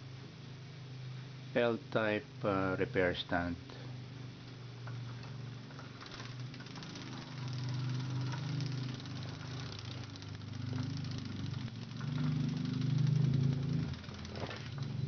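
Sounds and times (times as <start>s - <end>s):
engine running: 3.8s - 15.0s.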